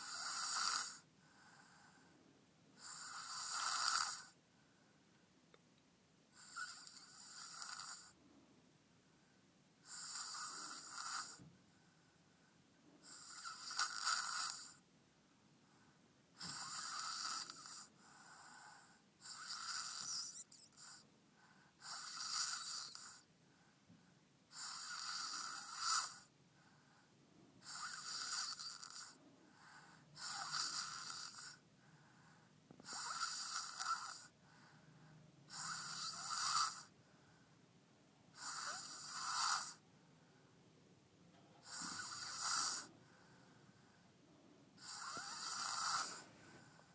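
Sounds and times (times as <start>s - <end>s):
person snoring: 38.4s - 39.8s, 44.8s - 46.4s.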